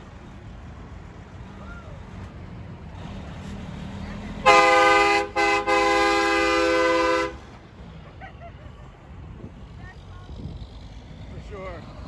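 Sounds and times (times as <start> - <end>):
truck air horn blasts: 4.4 - 7.5.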